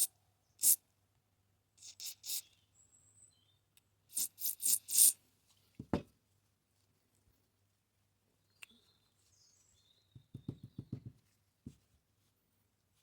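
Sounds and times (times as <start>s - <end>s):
aerosol spray can hissing: 0.0s - 0.8s, 1.8s - 2.4s, 4.1s - 5.2s
knock: 10.2s - 11.8s.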